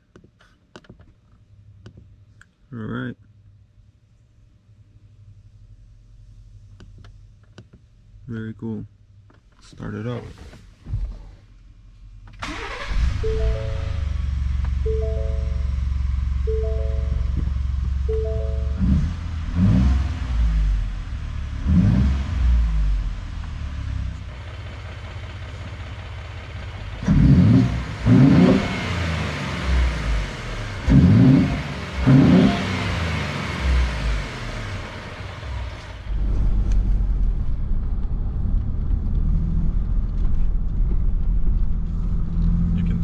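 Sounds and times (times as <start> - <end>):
engine low rumble: 1.2 - 43.0
engine revving: 12.4 - 40.6.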